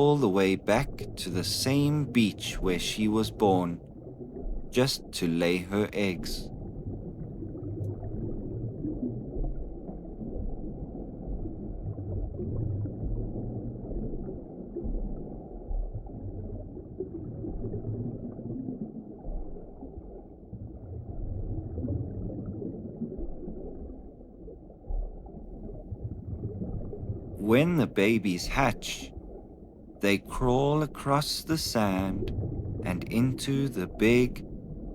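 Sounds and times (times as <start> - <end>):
muffled underwater water wash: 0.0 - 34.9.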